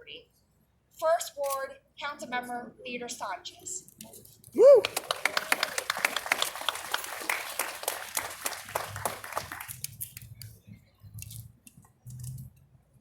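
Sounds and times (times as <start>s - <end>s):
crowd applauding: 4.6s - 10.3s.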